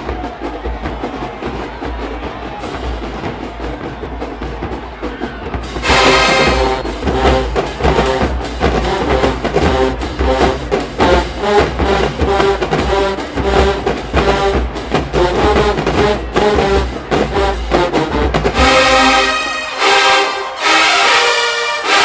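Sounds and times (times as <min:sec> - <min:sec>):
marching band playing: 0:00.0 - 0:22.0
brass section playing punchy phrases: 0:05.6 - 0:22.0.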